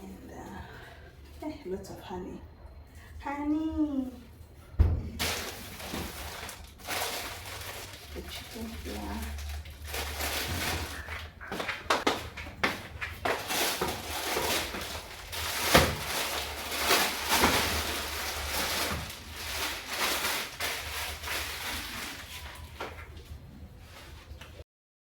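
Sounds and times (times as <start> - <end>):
packaging rustling and crinkling: 5.2 - 24.6.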